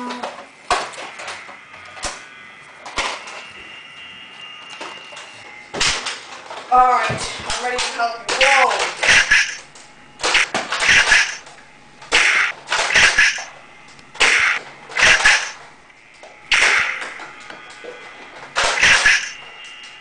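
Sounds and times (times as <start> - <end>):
toy blaster shots: 8.3 - 9.6, 10.2 - 11.4, 12.1 - 13.5, 14.2 - 15.6, 16.5 - 17.3, 18.6 - 19.4.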